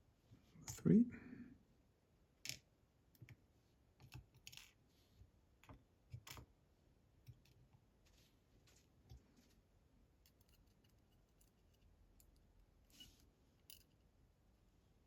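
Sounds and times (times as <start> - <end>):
small metal parts clicking: 10.2 - 12.5, 13.6 - 14.0.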